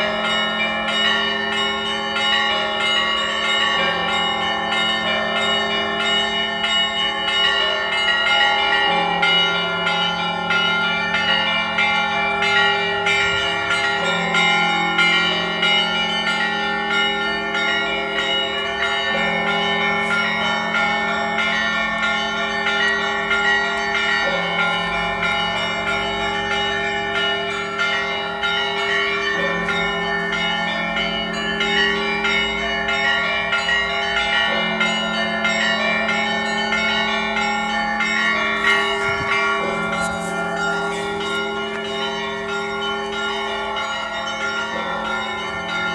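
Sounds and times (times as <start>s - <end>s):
small bells ringing rapidly: 24.9s - 45.9s.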